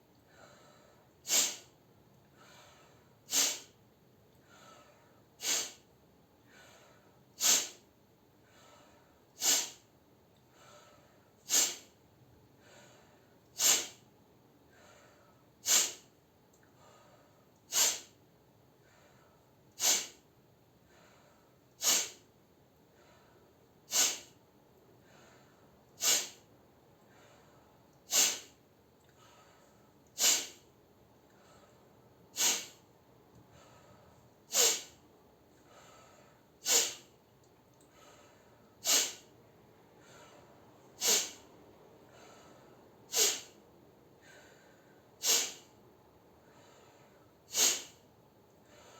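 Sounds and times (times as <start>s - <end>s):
faint mouth inhale: 1.3s - 1.7s, 3.3s - 3.7s, 5.4s - 5.8s, 7.4s - 7.8s, 8.7s - 9.8s, 11.5s - 11.9s, 13.6s - 14.0s, 15.6s - 16.1s, 17.7s - 18.1s, 19.8s - 20.2s, 21.8s - 22.2s, 23.9s - 24.4s, 26.0s - 26.4s, 28.1s - 28.6s, 30.2s - 30.6s, 32.4s - 32.8s, 33.6s - 35.0s, 35.7s - 37.1s, 37.9s - 39.3s, 41.0s - 41.4s, 42.2s - 43.6s, 44.4s - 45.7s, 47.5s - 48.0s
forceful nasal exhale: 1.3s - 1.7s, 3.3s - 3.7s, 5.4s - 5.8s, 7.4s - 7.8s, 9.4s - 9.8s, 11.5s - 11.9s, 13.6s - 14.0s, 15.6s - 16.1s, 17.7s - 18.1s, 19.8s - 20.2s, 21.8s - 22.2s, 23.9s - 24.4s, 26.0s - 26.4s, 28.1s - 28.6s, 30.2s - 30.6s, 32.4s - 32.8s, 34.5s - 35.0s, 35.8s - 37.1s, 38.8s - 39.3s, 41.0s - 41.4s, 42.2s - 43.6s, 44.2s - 45.7s, 47.5s - 48.0s.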